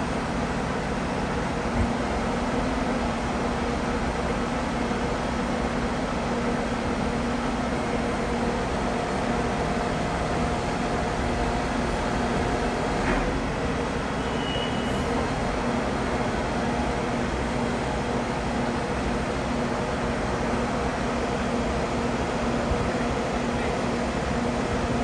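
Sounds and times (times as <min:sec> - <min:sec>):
machinery humming: 0:08.5 - 0:13.4.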